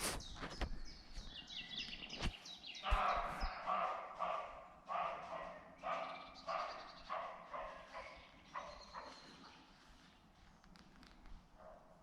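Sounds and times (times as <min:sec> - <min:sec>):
small bird chirping: 0:00.0 - 0:03.7, 0:05.8 - 0:11.2
deer barking: 0:02.8 - 0:09.4.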